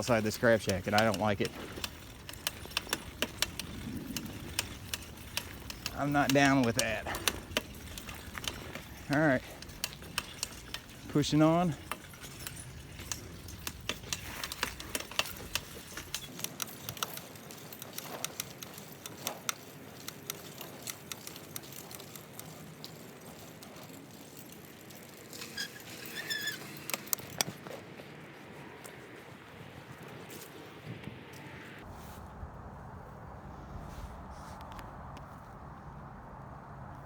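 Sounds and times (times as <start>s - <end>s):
light clicks and rattles: 0.0s - 28.1s
high chirps or squeaks: 25.4s - 26.9s.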